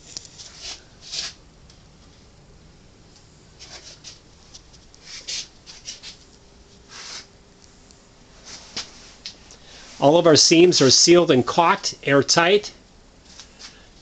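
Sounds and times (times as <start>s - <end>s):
faint rustles and scrapes: 0.0s - 1.4s, 3.6s - 7.4s, 8.3s - 10.1s
faint steady hum: 0.0s - 14.0s.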